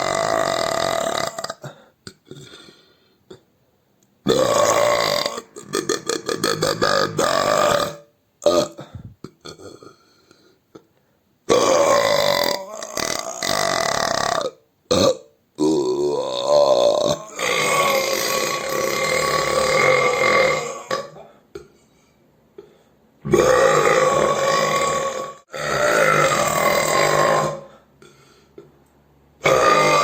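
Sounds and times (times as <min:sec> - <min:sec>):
person belching: 0:00.0 - 0:02.6, 0:04.3 - 0:10.1, 0:11.5 - 0:21.7, 0:23.2 - 0:28.1, 0:29.4 - 0:30.0.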